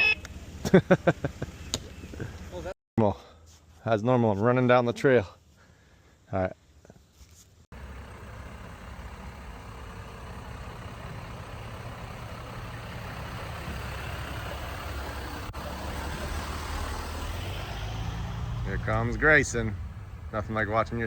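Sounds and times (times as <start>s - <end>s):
off-road vehicle engine running: 7.8s - 21.0s.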